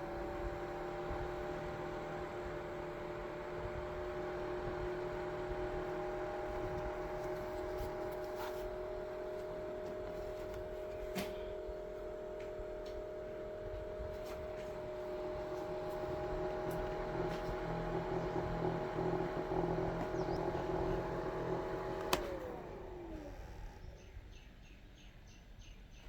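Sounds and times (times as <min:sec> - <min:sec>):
small fan motor humming: 0:00.0 - 0:24.4.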